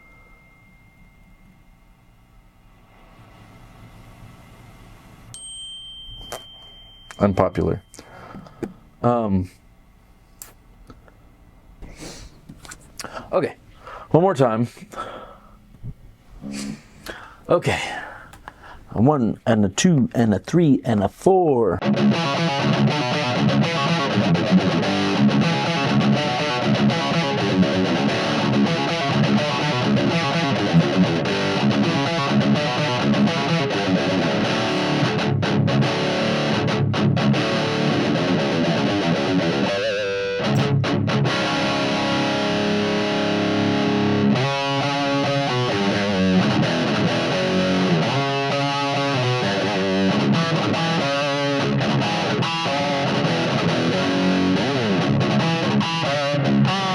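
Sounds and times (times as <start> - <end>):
distorted electric guitar riff: 21.8 - 56.9.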